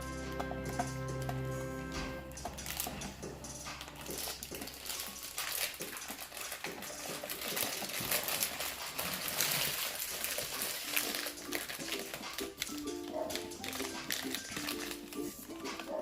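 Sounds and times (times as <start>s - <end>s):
wrappers crinkling and tearing: 3.8s - 16.0s.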